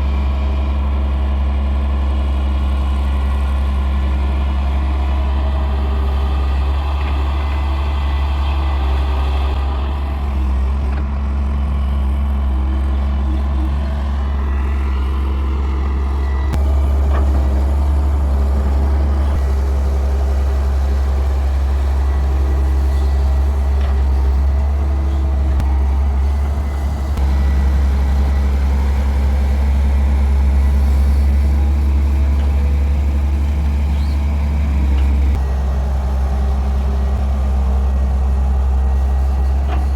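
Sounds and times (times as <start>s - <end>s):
heavy diesel engine droning: 0.0s - 39.9s.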